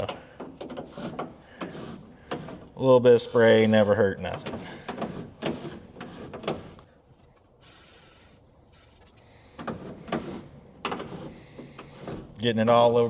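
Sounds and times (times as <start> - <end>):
aerosol spray hiss: 3.2 - 3.9, 7.6 - 8.4.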